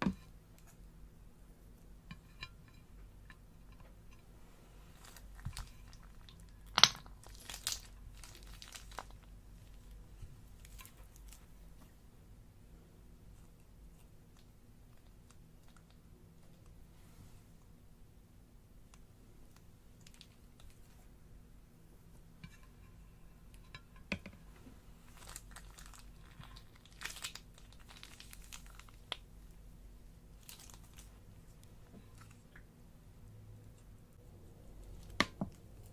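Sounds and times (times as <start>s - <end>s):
crinkling and crunching handling: 3.8s - 12.0s, 24.4s - 32.7s.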